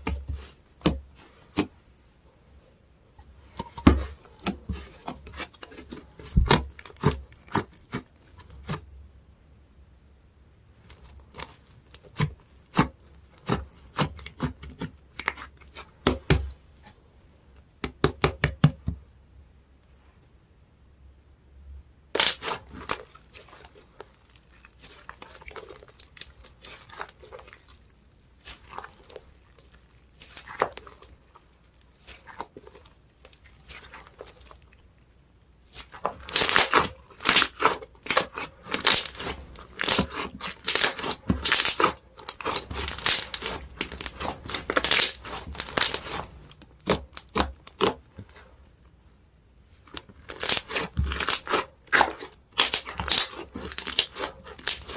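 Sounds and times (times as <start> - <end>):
slime squished by hand: 10.9 - 16.6, 22.1 - 34.9, 35.6 - 48.6, 49.8 - 54.9.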